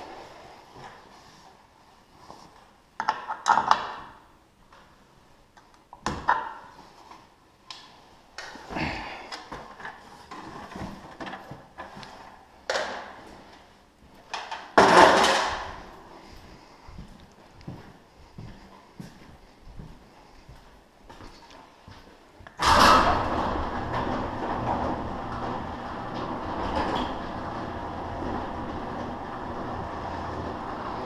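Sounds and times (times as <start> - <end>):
loud clatter: 22.6 - 31.0.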